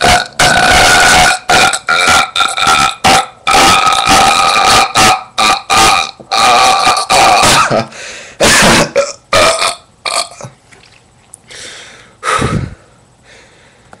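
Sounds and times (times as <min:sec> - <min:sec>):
person burping: 0:00.0 - 0:10.6.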